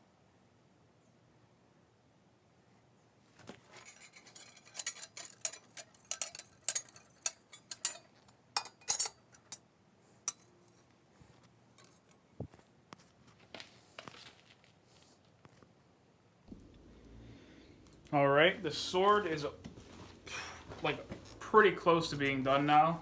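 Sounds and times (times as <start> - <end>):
metal pieces clinking: 3.7 - 9.6, 10.3 - 10.8, 11.8 - 12.1.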